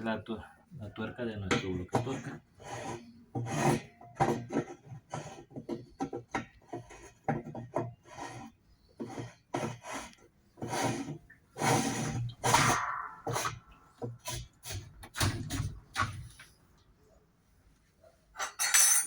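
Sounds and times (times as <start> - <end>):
metal parts knocking and scraping: 18.4 - 19.0.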